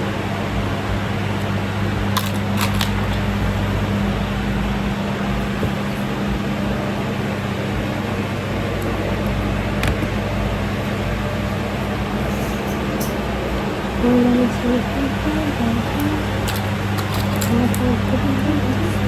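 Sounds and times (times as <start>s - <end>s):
electric motor hum: 13.2s - 19.0s.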